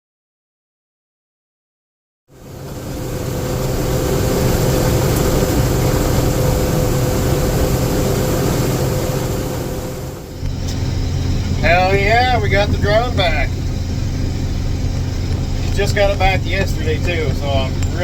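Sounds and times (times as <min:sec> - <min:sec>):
combine harvester running: 0:02.3 - 0:18.0.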